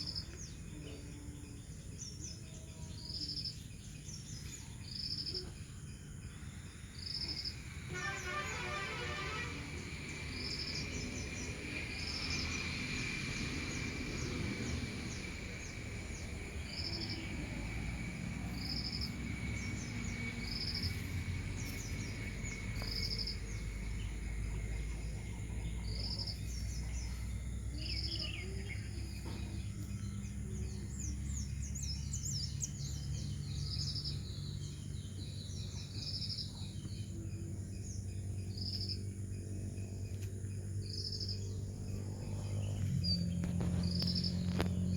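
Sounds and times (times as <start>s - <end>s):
birds chirping: 0.0s - 44.9s
steady low rumble: 9.8s - 44.9s.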